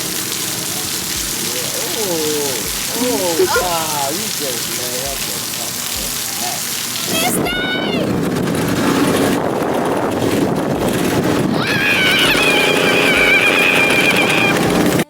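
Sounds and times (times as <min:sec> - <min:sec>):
wind rush on microphone: 0:05.1 - 0:15.0
go-kart engine: 0:08.1 - 0:15.0
high wavering squeal: 0:11.6 - 0:15.0.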